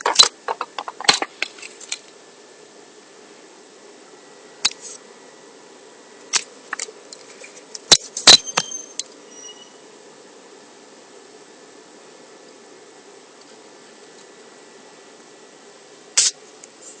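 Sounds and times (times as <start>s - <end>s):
motor humming with thin whine: 0.0s - 17.0s
high squeaks: 8.3s - 9.8s.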